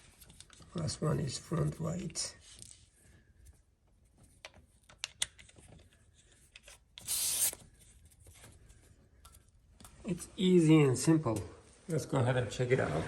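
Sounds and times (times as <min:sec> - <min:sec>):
air hissing from tyre valve: 0:07.1 - 0:07.6.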